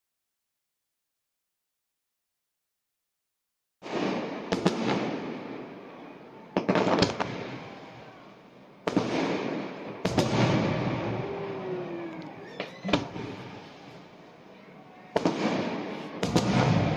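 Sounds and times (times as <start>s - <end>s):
fireworks bursting with rumble: 3.8s - 16.9s.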